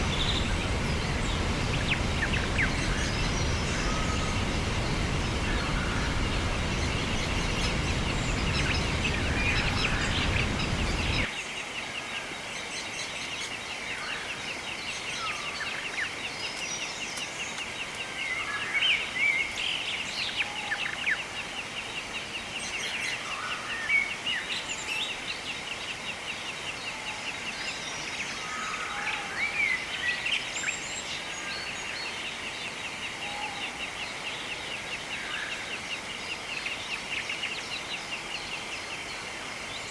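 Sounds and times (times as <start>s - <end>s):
loud even rush: 0.0s - 11.3s
wild birds chirping and calling: 0.0s - 39.9s.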